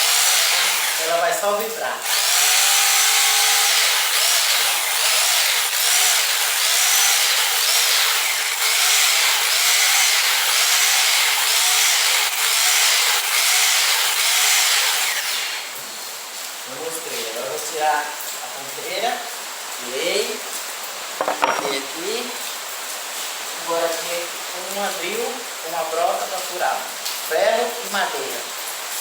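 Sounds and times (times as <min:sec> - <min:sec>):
impact drill hammering: 0:00.0 - 0:01.1, 0:02.1 - 0:15.4, 0:21.2 - 0:21.8.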